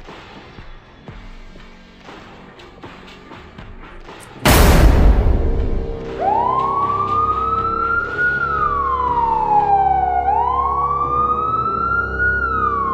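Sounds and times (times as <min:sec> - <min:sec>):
steady low drone: 0:04.3 - 0:12.9
wailing siren: 0:05.8 - 0:12.9.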